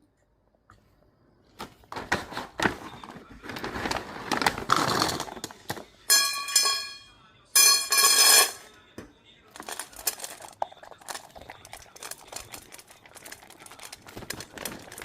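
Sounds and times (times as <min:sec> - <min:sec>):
packaging crinkling: 0:02.6 - 0:05.8, 0:09.6 - 0:15.0.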